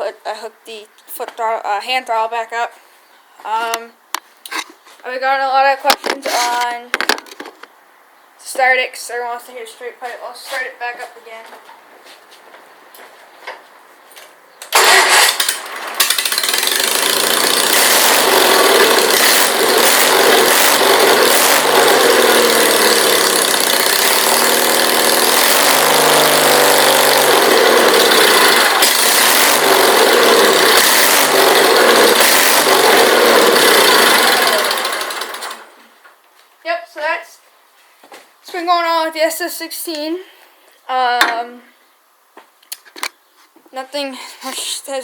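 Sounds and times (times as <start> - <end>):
tractor engine running loudly: 14.8 - 35.7.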